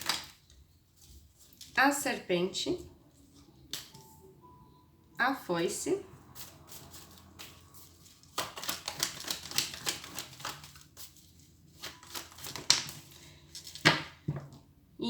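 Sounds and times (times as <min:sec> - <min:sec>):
cards being shuffled: 0:00.0 - 0:00.4, 0:06.4 - 0:14.2.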